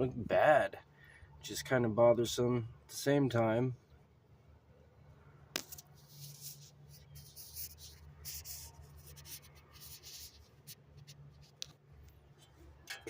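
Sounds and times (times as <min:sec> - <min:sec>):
rubbing and scraping: 0:05.6 - 0:11.6.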